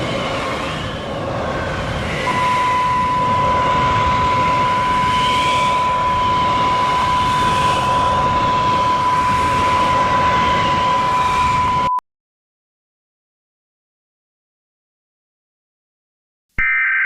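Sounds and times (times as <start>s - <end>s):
loud rushing wind: 0.0s - 11.9s
steady high-pitched tone: 0.0s - 12.0s, 16.6s - 17.0s.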